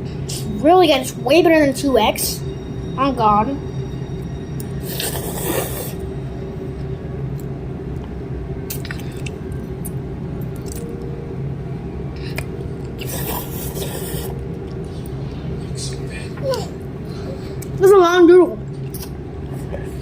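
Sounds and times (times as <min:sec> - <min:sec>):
steady low hum: 0:00.0 - 0:20.0
noodle slurping: 0:04.8 - 0:06.0, 0:13.0 - 0:14.4.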